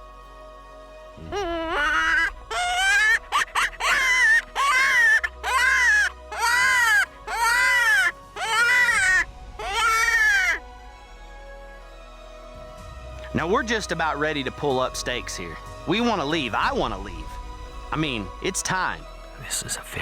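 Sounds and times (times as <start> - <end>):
predator call imitating coyote yelps: 1.2 - 10.6.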